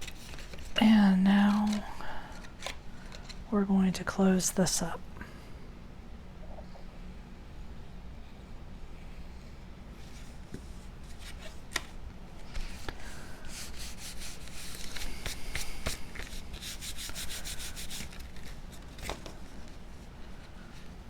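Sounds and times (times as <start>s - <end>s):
cardstock being folded: 0.0s - 3.4s, 11.0s - 20.8s
quick rubbing on card: 12.5s - 19.0s.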